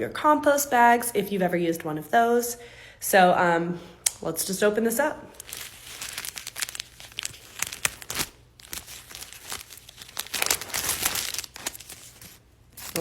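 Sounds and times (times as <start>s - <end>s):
plastic wrapper crinkling: 5.3s - 13.0s.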